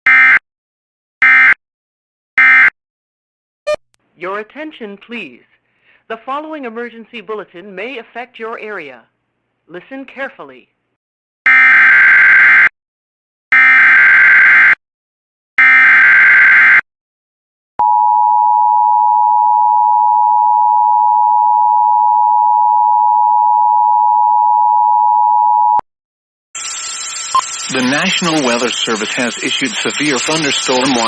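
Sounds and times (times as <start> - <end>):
digital data tone bursts: 26.6 - 31.0.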